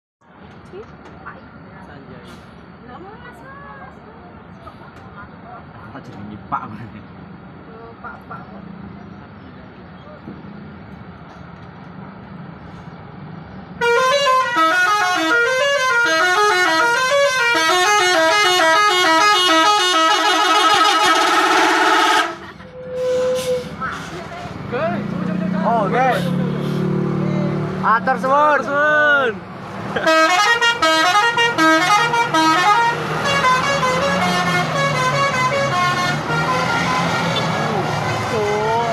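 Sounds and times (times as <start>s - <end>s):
bus horn playing melody: 13.8s - 23.8s, 30.0s - 38.9s.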